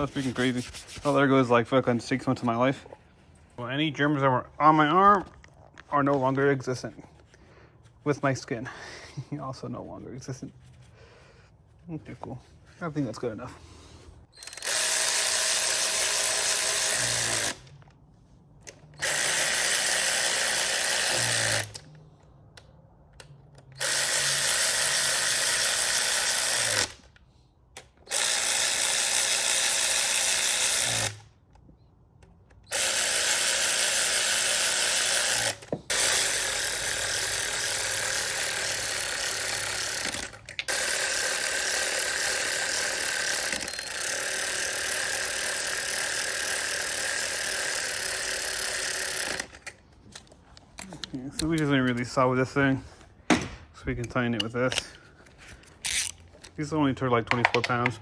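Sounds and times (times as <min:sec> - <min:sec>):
power drill running: 0:14.3 - 0:17.8, 0:18.9 - 0:21.9, 0:23.8 - 0:27.1, 0:28.0 - 0:31.3, 0:32.6 - 0:49.8.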